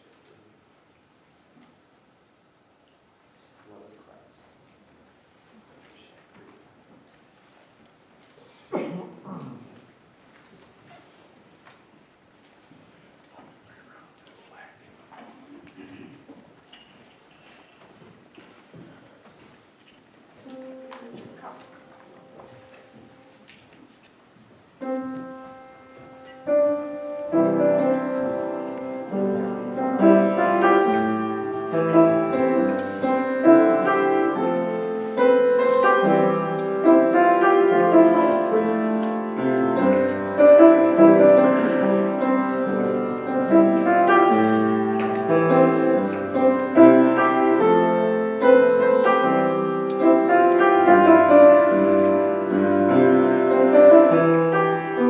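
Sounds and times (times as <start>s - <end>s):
slow keyboard chords: 20.4s - 23.4s, 24.8s - 55.0s.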